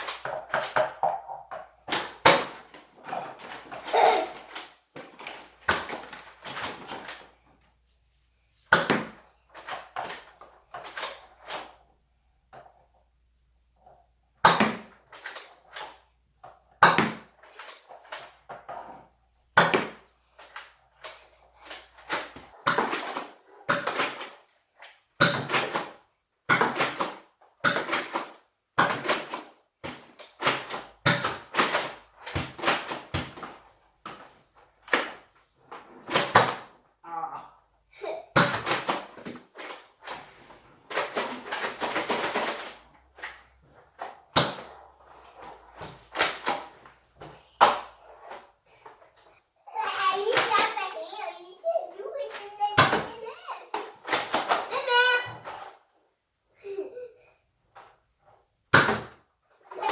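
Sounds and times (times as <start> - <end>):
darts hitting cupboards: 8.7 - 10.2, 14.4 - 15.0, 16.8 - 17.3, 19.6 - 20.0, 25.2 - 33.5, 38.3 - 39.4, 58.7 - 59.2.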